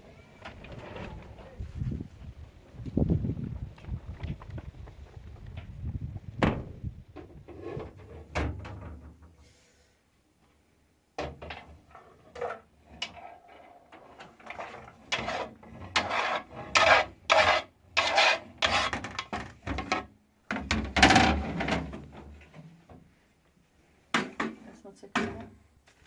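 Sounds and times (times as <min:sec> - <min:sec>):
scraping strokes: 0:12.3 - 0:19.3.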